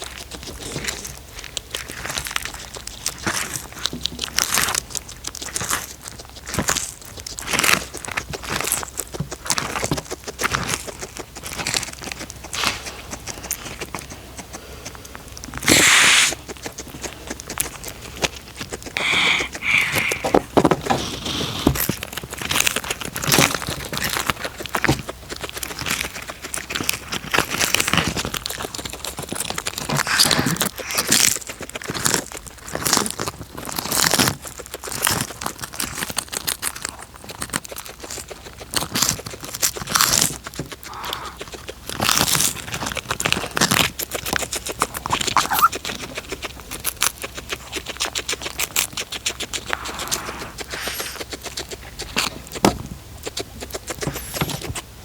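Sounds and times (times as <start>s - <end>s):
cat crunching food: 0.0s - 54.9s.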